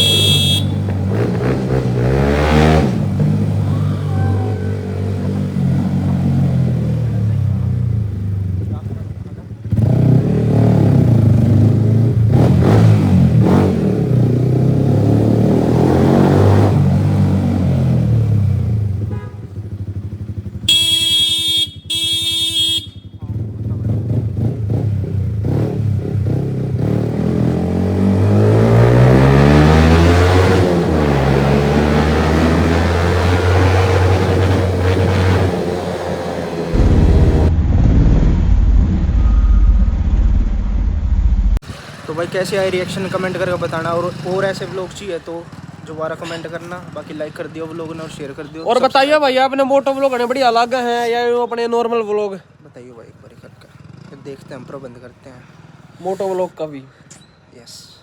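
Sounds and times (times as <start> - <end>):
horn: 0.0 - 0.8, 20.7 - 23.0
motorcycle engine rumbling: 0.0 - 2.1, 18.6 - 26.8, 34.0 - 42.0
motorcycle engine revving: 0.0 - 41.9.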